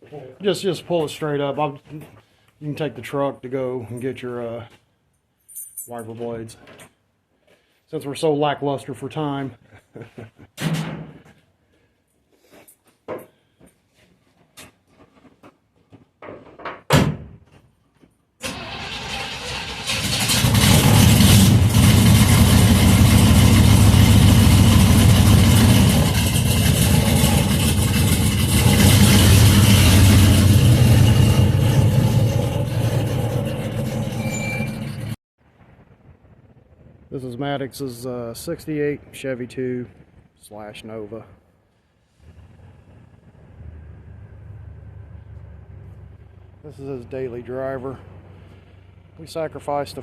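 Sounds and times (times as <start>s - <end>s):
thump: 10.6s - 11.3s, 16.6s - 17.6s
car engine running loud: 18.5s - 35.2s.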